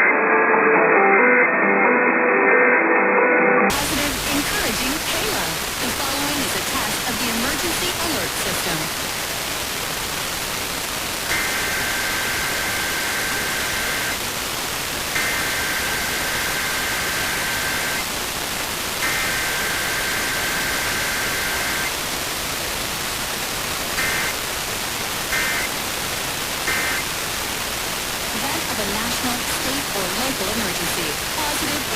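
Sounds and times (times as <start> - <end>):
radio static hiss: 3.7 - 31.9
two-tone digital data bursts: 11.3 - 14.2, 15.2 - 18.1, 19.0 - 21.9, 24.0 - 24.4, 25.3 - 25.8, 26.6 - 27.1.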